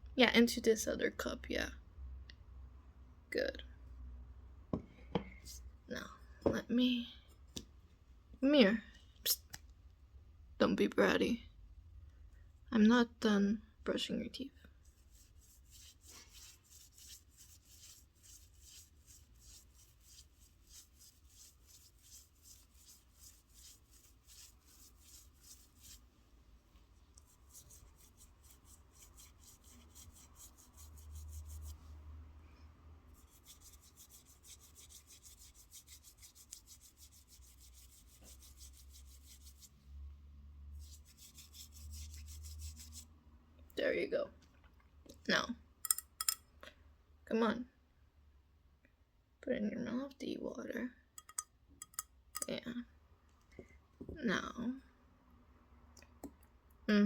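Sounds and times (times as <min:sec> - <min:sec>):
toothbrush scrubbing: 0:14.8 - 0:26.1, 0:27.2 - 0:31.9, 0:33.1 - 0:39.8, 0:40.8 - 0:43.1, 0:51.2 - 0:52.5.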